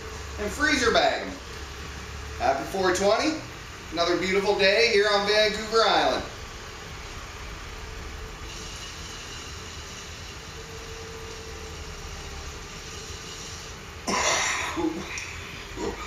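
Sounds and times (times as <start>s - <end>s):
steady background noise: 0.0s - 16.0s
man coughing loudly: 14.0s - 15.1s.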